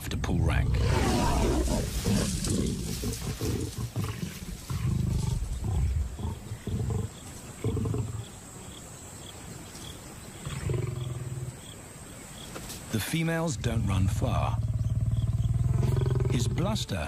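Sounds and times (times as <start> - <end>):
lions snarling and growling: 0.6 - 8.4, 10.4 - 11.6, 14.5 - 16.7.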